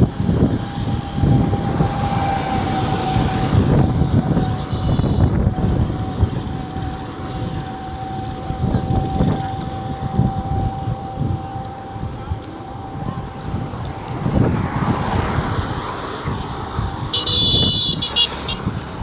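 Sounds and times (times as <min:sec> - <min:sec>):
steady high whine: 0:00.0 - 0:15.0
road traffic rumbling: 0:00.0 - 0:19.0.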